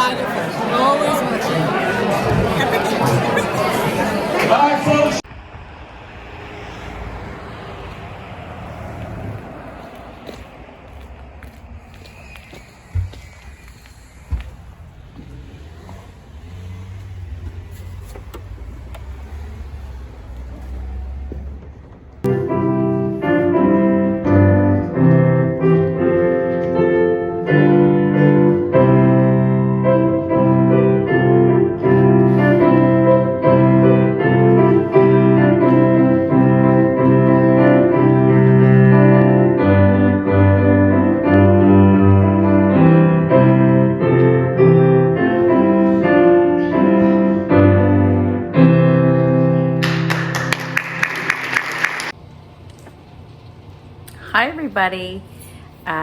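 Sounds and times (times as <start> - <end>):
audience applause: 0.0 - 5.2, 49.8 - 52.2
solo piano piece: 22.2 - 51.0.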